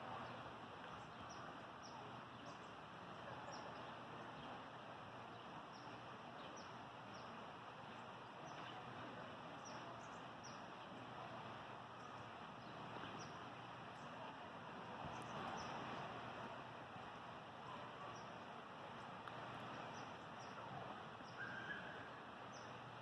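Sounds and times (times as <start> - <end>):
soft outdoor hiss: 0.0 - 23.0.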